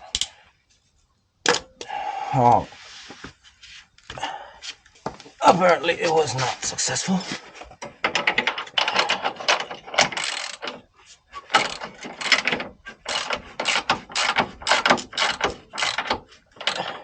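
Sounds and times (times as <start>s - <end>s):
ratchet wrench clicking: 10.0s - 10.7s, 11.5s - 16.8s.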